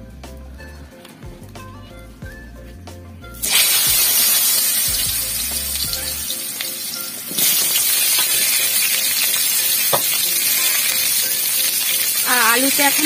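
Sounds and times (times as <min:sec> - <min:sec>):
potatoes sizzling in hot oil: 0:03.4 - 0:13.0.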